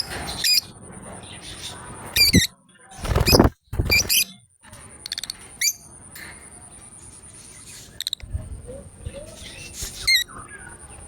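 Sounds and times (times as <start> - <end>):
lovebirds chirping: 0.3 - 4.3
rustling: 2.2 - 4.2.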